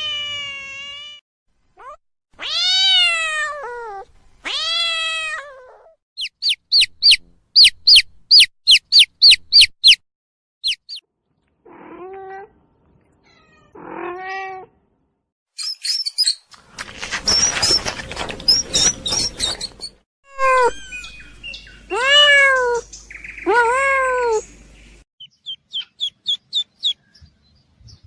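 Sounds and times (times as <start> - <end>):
cat meowing: 0.0 - 1.2, 1.8 - 6.0, 11.7 - 12.5, 13.2 - 14.8, 20.3 - 21.2, 21.9 - 22.8, 23.5 - 24.4
high short squeaks: 6.2 - 10.0.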